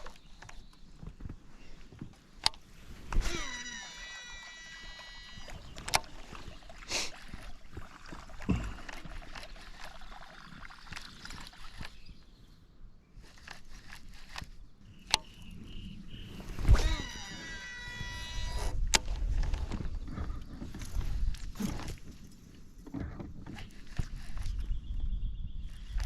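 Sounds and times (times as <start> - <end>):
reel spool whirring: 3.0 - 12.0, 16.5 - 18.8.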